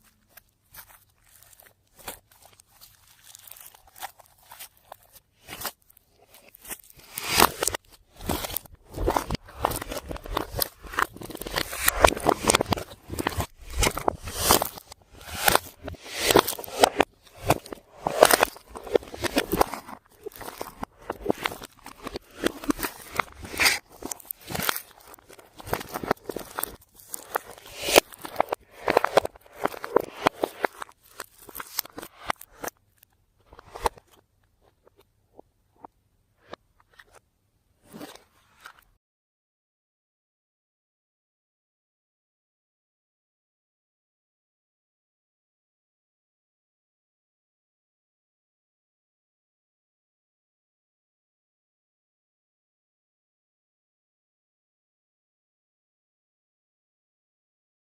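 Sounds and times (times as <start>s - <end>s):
slime squishing and crackling: 0.0s - 32.7s.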